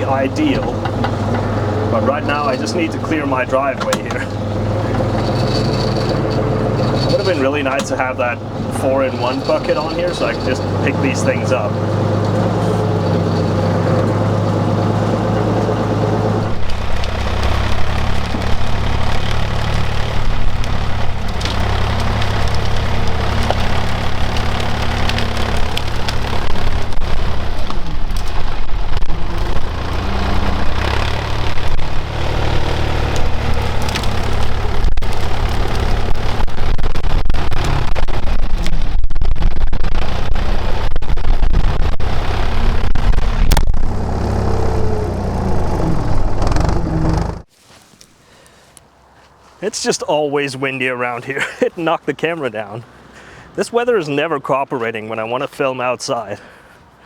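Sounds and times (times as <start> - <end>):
loader bucket knocks and clatter: 0.0 - 36.8
tractor engine running: 0.0 - 47.5.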